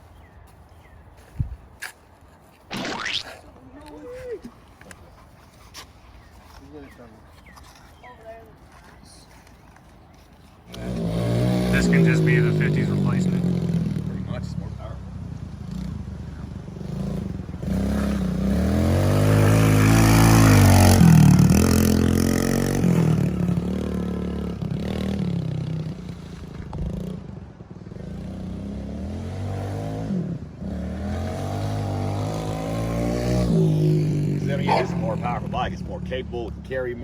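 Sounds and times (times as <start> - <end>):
motorbike engine revving: 10.7 - 26.0, 28.0 - 36.2.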